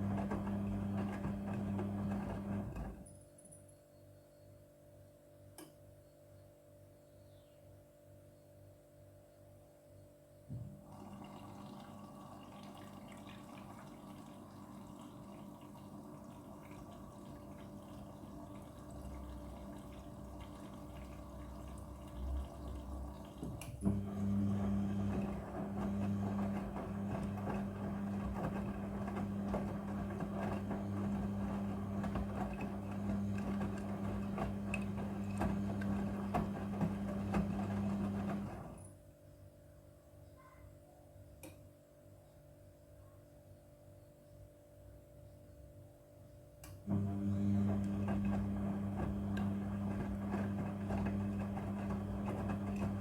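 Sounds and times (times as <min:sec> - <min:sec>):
water running into drum: 0:00.0 - 0:02.9, 0:10.8 - 0:38.8, 0:46.9 - 0:53.0
washing machine motor hum: 0:00.0 - 0:03.1, 0:10.5 - 0:39.0, 0:46.8 - 0:53.0.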